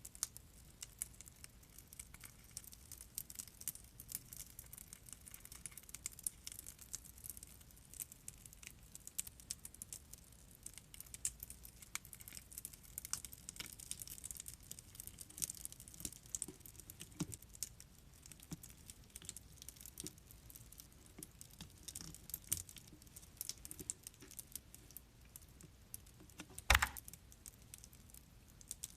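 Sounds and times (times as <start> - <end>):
knock: 26.7 - 27.0.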